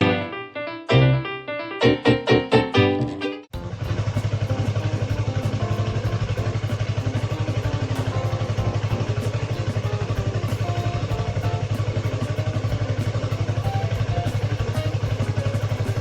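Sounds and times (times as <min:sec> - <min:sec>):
motorcycle engine running: 0:03.6 - 0:16.0.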